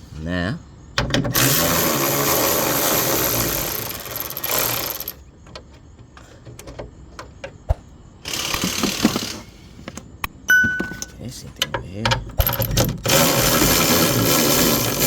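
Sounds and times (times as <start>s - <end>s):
cordless power tool running: 1.4s - 5.1s, 8.3s - 9.4s, 13.0s - 15.0s
handling clicks and knocks: 5.4s - 7.8s, 8.5s - 13.1s.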